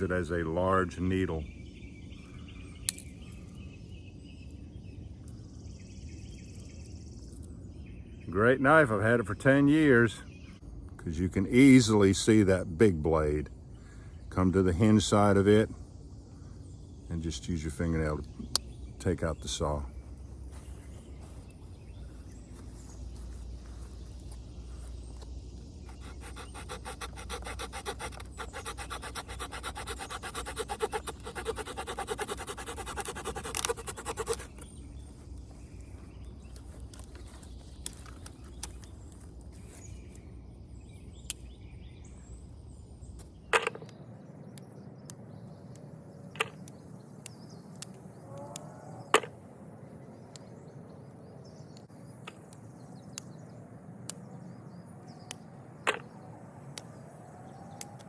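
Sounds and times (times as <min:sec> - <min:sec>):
small saw cutting a branch: 0:25.8 - 0:34.7
sharp clicks: 0:26.0 - 0:34.6.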